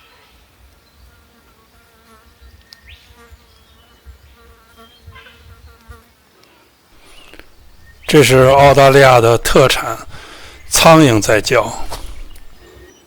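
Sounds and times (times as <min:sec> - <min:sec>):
flies buzzing: 0:07.0 - 0:12.7.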